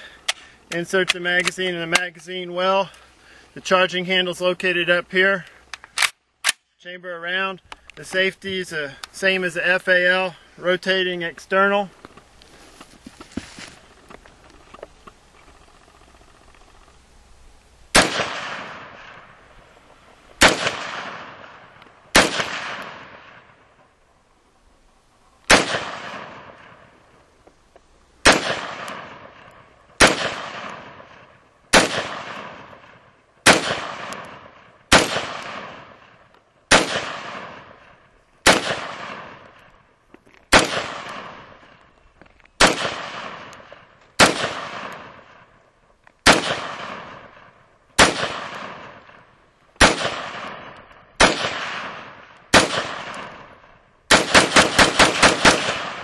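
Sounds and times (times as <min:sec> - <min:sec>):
rifle shots with echo: 0:17.9 - 0:19.6, 0:20.4 - 0:23.8, 0:25.5 - 0:27.1, 0:28.2 - 0:39.8, 0:40.5 - 0:41.8, 0:42.6 - 0:45.6, 0:46.2 - 0:56.0.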